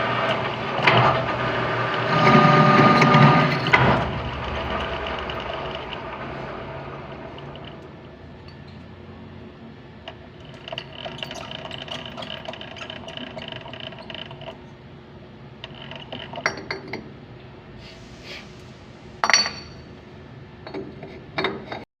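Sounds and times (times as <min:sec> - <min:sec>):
machine hum: 0:00.0 - 0:14.8
metal clinking: 0:19.2 - 0:19.8.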